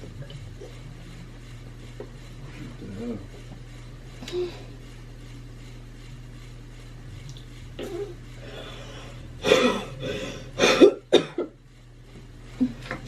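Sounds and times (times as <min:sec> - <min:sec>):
person coughing: 0:09.4 - 0:11.6.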